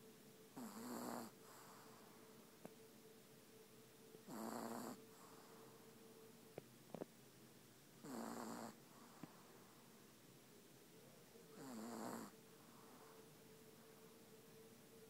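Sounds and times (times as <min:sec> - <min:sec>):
dog snoring: 0:00.6 - 0:02.1, 0:04.2 - 0:05.6, 0:08.0 - 0:09.4, 0:11.6 - 0:13.2.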